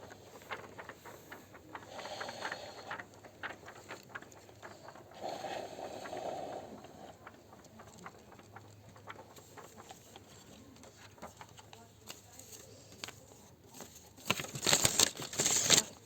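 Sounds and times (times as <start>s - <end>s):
hissing rustling noise: 0.0s - 10.5s.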